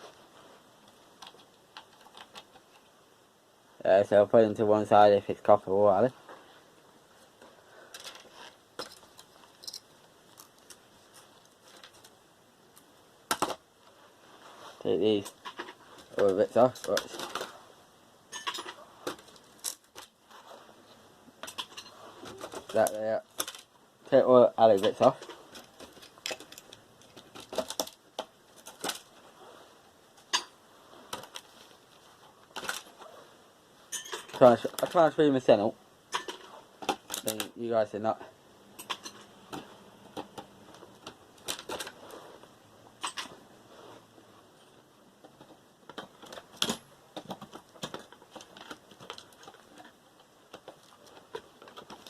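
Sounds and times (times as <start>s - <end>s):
metal parts and tools clinking: 7.9s - 12.1s, 18.3s - 20.2s, 21.4s - 23.7s, 24.6s - 29.2s, 33.9s - 35.2s, 36.1s - 37.5s, 38.7s - 40.3s, 43.0s - 43.4s.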